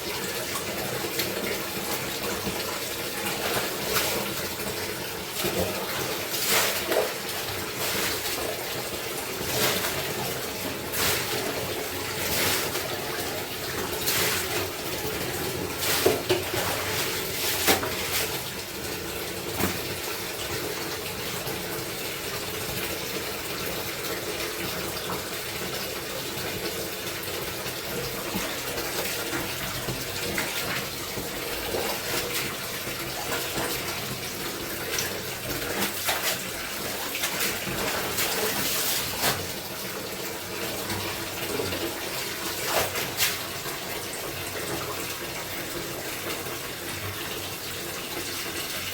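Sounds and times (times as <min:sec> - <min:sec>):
water splashing: 0:00.0 - 0:20.4, 0:28.1 - 0:43.9
clothes slapping in water: 0:00.4 - 0:21.0, 0:28.0 - 0:44.2.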